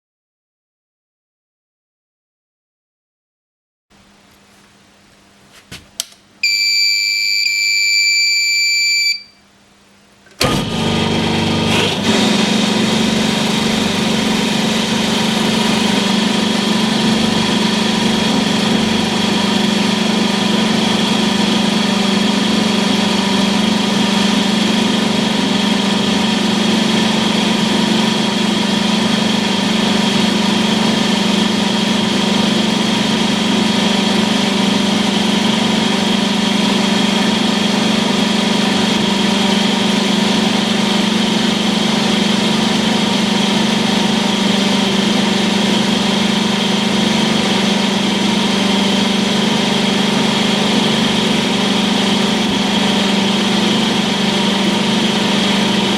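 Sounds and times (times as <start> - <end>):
electronic beep: 6.4 - 9.4
pump drive humming: 10.2 - 32.8.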